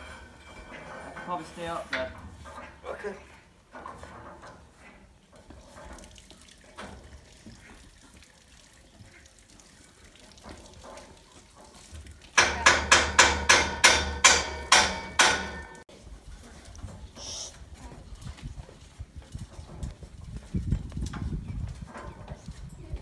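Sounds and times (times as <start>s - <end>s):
hammer striking metal scaffolding: 0.0s - 2.8s, 12.4s - 15.8s.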